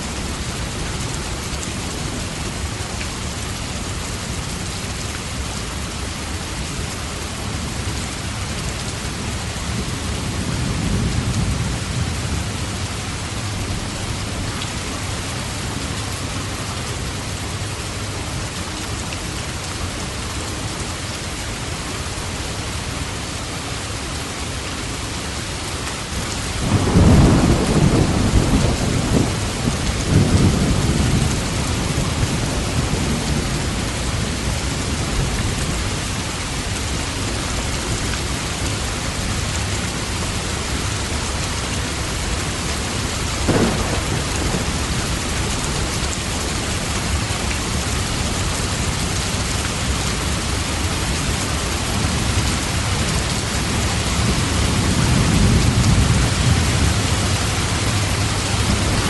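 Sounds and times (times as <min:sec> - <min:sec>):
steady rain: 0:00.0 - 0:59.0
thunder rumbling: 0:26.6 - 0:35.8, 0:43.4 - 0:59.0
sharp thunderclap: 0:43.5 - 0:45.7, 0:58.6 - 0:59.0.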